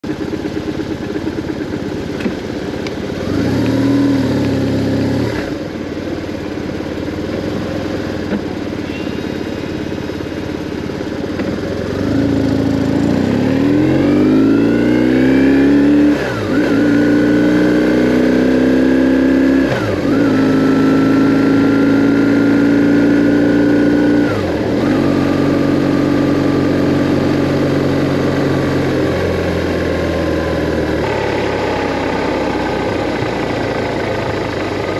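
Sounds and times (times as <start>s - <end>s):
motorcycle engine revving and accelerating: 0.0s - 34.9s.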